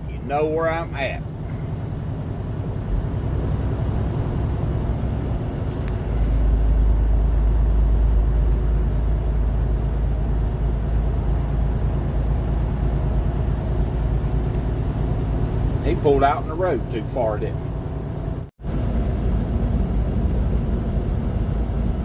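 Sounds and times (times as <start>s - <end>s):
road rumble: 0.0s - 22.0s
truck engine: 0.0s - 22.0s.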